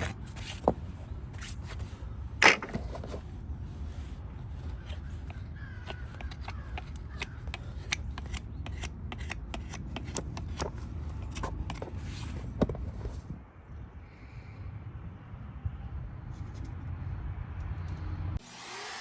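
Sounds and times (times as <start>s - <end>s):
hoof trimming cutting and scraping: 0.0s - 13.4s.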